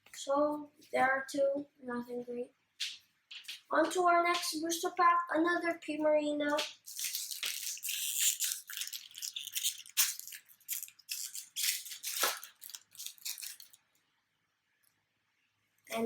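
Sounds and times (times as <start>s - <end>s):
foil wrapper crinkling: 6.6s - 14.0s.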